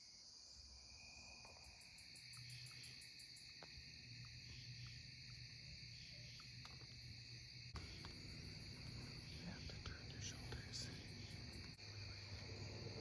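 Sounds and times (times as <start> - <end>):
crickets and insects trilling: 0.0 - 13.0
faint low hum: 4.0 - 13.0.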